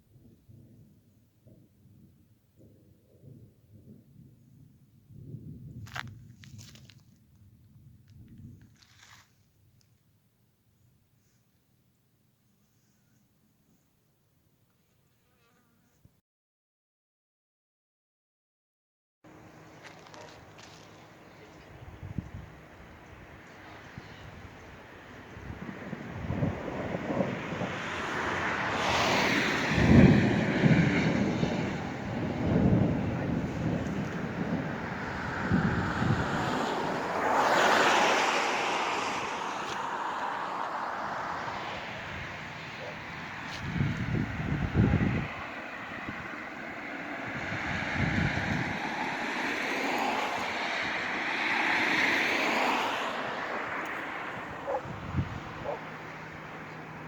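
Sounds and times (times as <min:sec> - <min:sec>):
rolling thunder: 0:00.1 - 0:05.8, 0:25.4 - 0:37.2, 0:42.0 - 0:46.4
passing vehicle rushing: 0:19.3 - 0:57.0.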